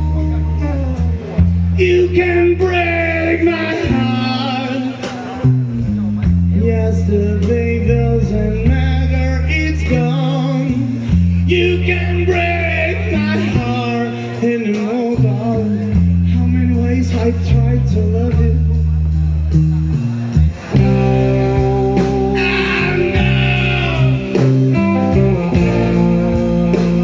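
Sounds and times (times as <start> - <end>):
person singing: 0.0 - 5.7, 20.8 - 27.0
electric guitar: 0.0 - 18.8, 19.4 - 27.0
held bass notes: 0.0 - 27.0
drum hits: 20.6 - 27.0.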